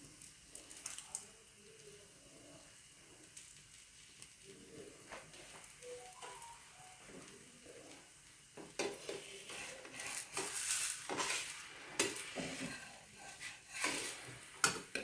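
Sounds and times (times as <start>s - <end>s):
batter sizzling in oil: 0.0s - 15.0s
metal utensil scraping pan: 8.8s - 14.8s.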